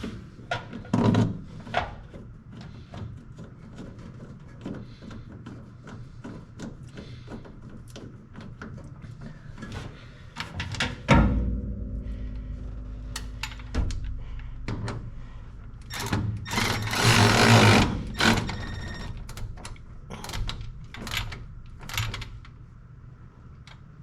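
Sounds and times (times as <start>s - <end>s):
handheld power tool running: 15.9s - 18.9s.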